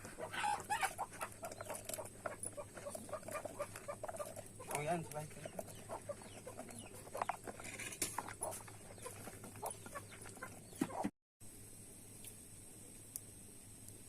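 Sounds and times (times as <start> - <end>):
chickens clucking: 0.0 - 11.1.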